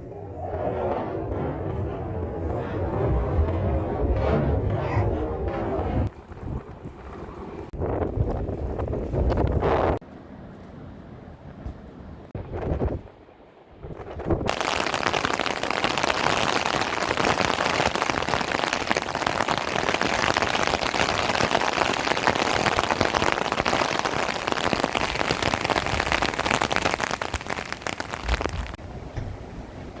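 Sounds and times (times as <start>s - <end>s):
heavy rain falling: 14.5s - 28.8s.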